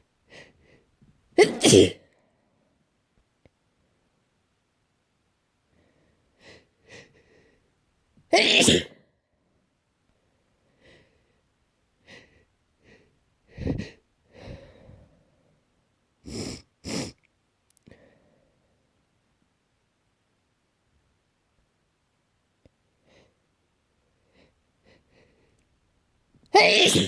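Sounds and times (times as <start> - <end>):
person sneezing: 1.4 - 2.0, 8.4 - 8.9, 26.6 - 27.0.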